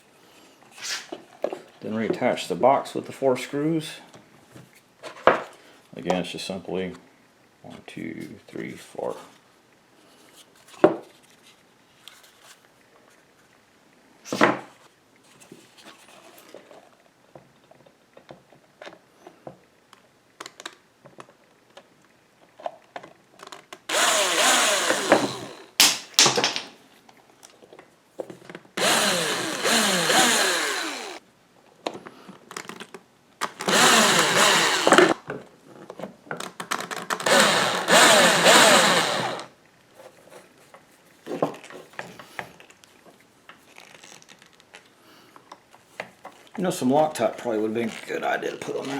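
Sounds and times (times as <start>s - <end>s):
power screwdriver driving screws: 23.9s - 26.0s, 28.8s - 31.2s, 33.5s - 35.2s, 37.2s - 39.5s.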